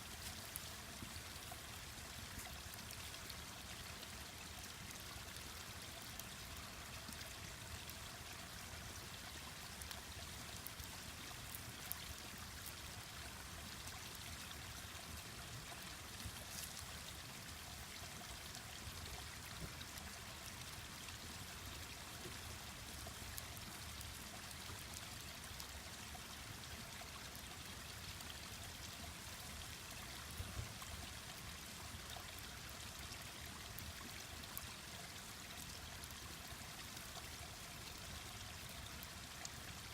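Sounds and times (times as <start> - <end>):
stream running: 0.0 - 39.9
wood fire crackling: 0.1 - 1.5.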